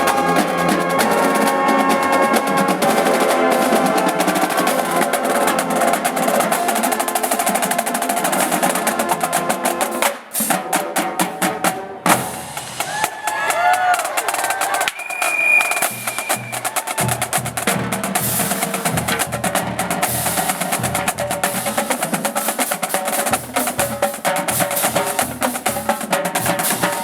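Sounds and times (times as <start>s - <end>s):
held brass chords: 0.0s - 12.7s
rapid snare drum line: 0.0s - 27.0s.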